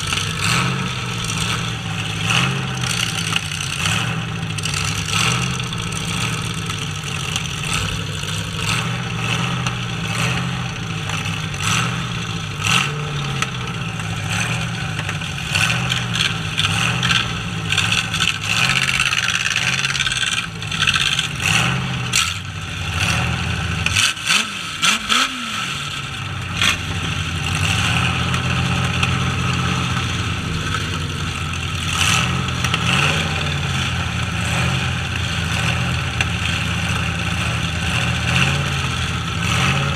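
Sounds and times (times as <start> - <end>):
truck engines revving hard: 0.0 - 39.9.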